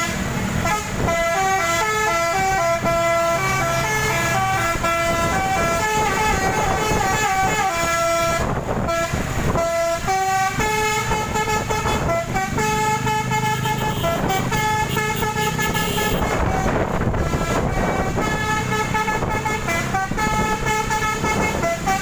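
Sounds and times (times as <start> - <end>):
bus air horn playing a tune: 0.0 - 22.0.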